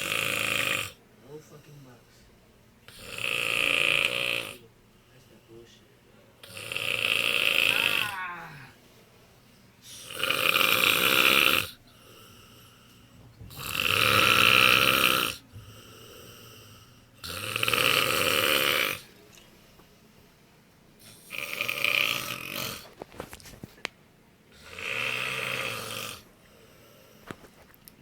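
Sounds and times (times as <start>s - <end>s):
man snoring loudly: 0.0s - 1.0s, 2.9s - 4.6s, 6.4s - 8.7s, 9.9s - 11.8s, 13.6s - 16.6s, 17.2s - 19.0s, 21.1s - 22.8s, 24.6s - 26.3s.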